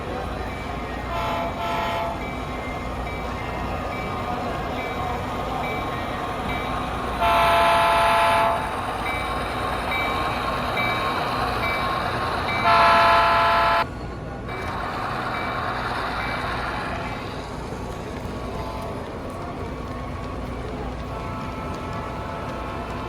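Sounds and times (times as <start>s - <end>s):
steady train rumble: 0.0s - 23.0s
train horn blasts: 1.1s - 2.3s, 7.2s - 8.7s, 12.6s - 13.9s, 21.1s - 23.0s.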